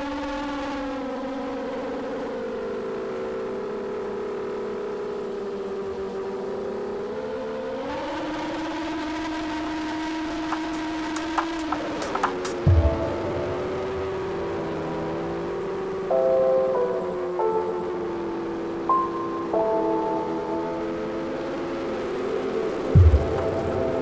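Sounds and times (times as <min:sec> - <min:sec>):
drone motors whining: 0:00.0 - 0:24.0.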